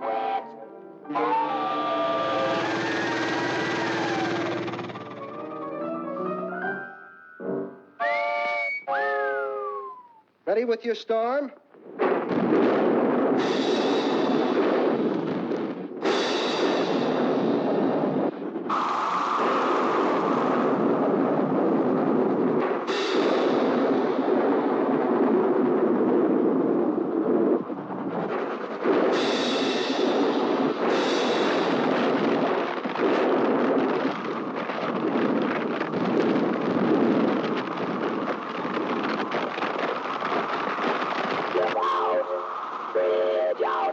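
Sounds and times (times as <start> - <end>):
thunder crashes: 1.2 - 5.6, 11.9 - 43.0
rain-like hiss: 28.9 - 43.1.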